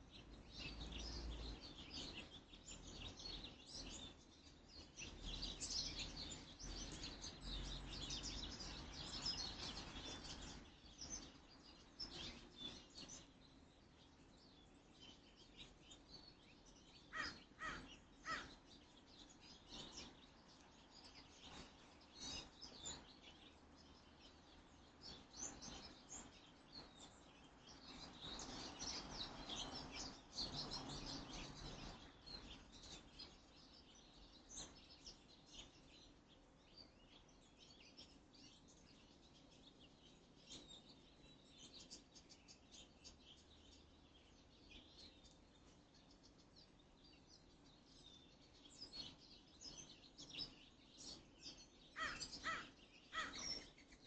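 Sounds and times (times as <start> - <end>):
small birds chirping: 0.0 - 54.0
crows cawing: 17.1 - 18.6, 52.0 - 53.5.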